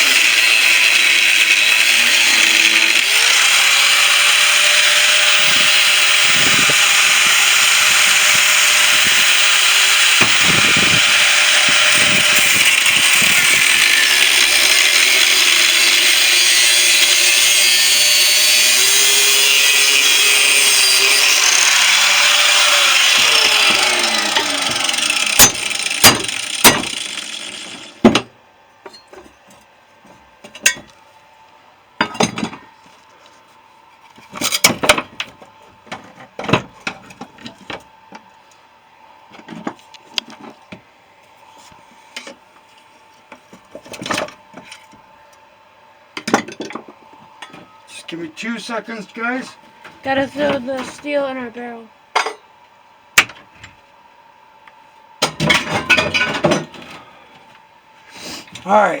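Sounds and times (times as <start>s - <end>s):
power cutting tool cutting steel: 0.0s - 28.0s.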